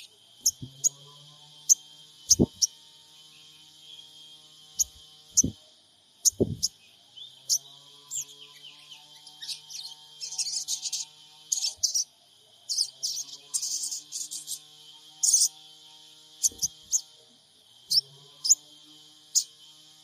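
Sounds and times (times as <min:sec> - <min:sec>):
bird chirping and chattering: 0:00.0 - 0:01.0, 0:01.6 - 0:02.8, 0:04.8 - 0:05.6, 0:06.2 - 0:12.1, 0:12.7 - 0:15.6, 0:16.4 - 0:17.1
low thuds: 0:06.3 - 0:06.7.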